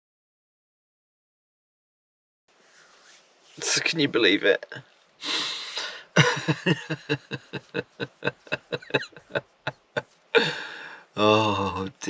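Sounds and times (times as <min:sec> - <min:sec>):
man laughing: 0:04.7 - 0:11.9.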